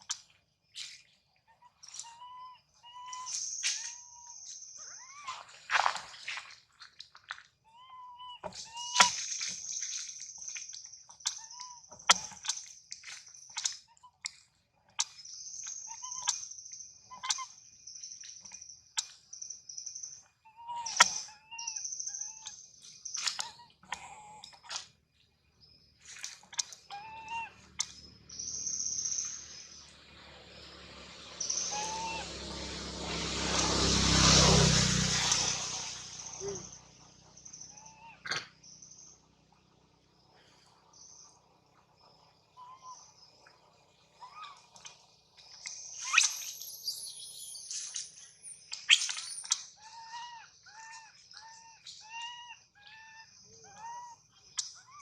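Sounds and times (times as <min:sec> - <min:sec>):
baby monkey calling: 0:01.5 - 0:05.6, 0:07.7 - 0:09.5, 0:17.1 - 0:17.6, 0:20.4 - 0:24.8, 0:26.5 - 0:29.8, 0:31.4 - 0:32.4, 0:35.2 - 0:36.8, 0:37.5 - 0:38.5, 0:44.2 - 0:44.9, 0:46.0 - 0:48.2, 0:48.8 - 0:55.0.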